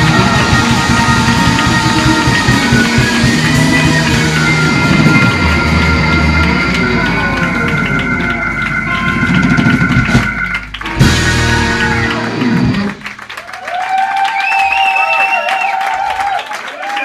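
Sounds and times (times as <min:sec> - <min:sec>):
blues-rock band playing live: 0:00.0 - 0:13.2
audience cheering: 0:00.0 - 0:17.0.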